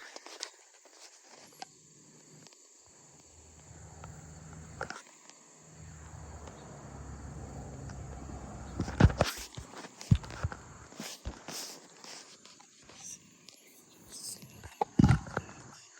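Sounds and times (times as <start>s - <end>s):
faint insect chirring: 0.9s - 9.4s, 12.8s - 15.9s
low rumble: 3.2s - 4.9s, 5.7s - 9.3s, 10.2s - 10.9s.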